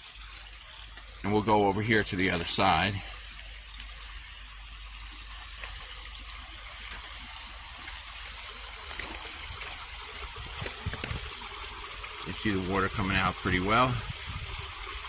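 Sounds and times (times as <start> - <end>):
water flowing out of pipe: 0.0 - 15.0.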